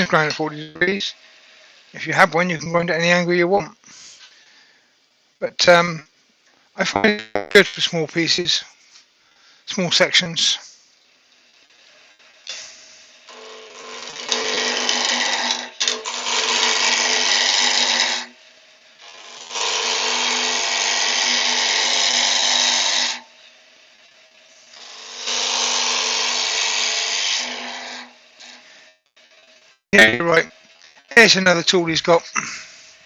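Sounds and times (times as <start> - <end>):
lathe humming: 13.0 - 18.3, 19.0 - 23.2, 24.8 - 28.6
gouge cutting wood on lathe: 13.3 - 18.4, 19.0 - 23.3, 24.8 - 28.6.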